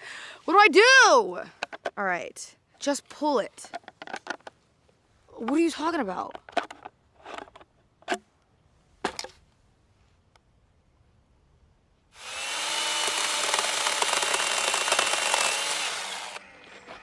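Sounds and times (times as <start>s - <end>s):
electric saw cutting wood: 12.2s - 17.0s.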